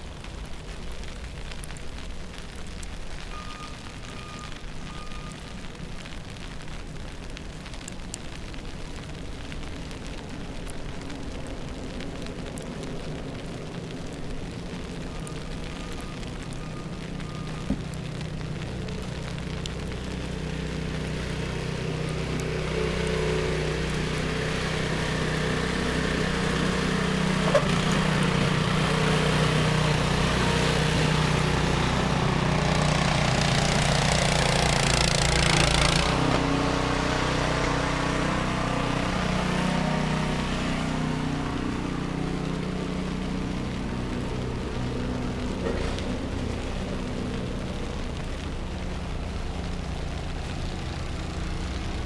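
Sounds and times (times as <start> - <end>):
engine running: 11.7 - 52.0.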